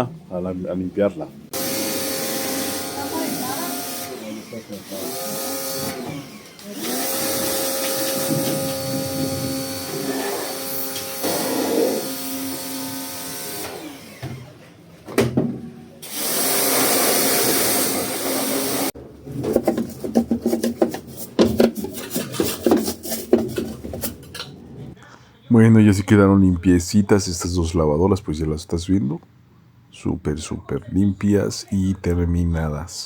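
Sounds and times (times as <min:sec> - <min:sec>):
small electric motor whirring: 0:01.5 - 0:14.4, 0:16.0 - 0:19.0
knocks and clatters: 0:07.2 - 0:10.1, 0:19.2 - 0:24.9.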